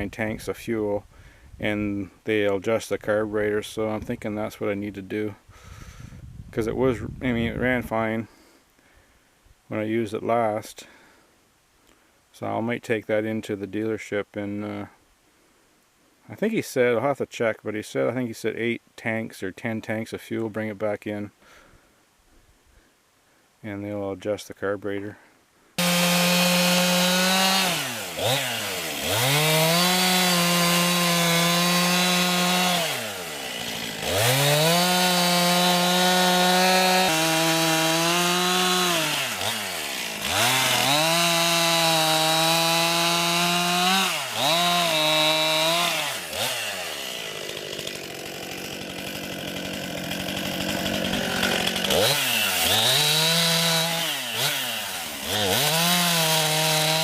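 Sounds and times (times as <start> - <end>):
chainsaw cutting wood: 25.8 - 57.0.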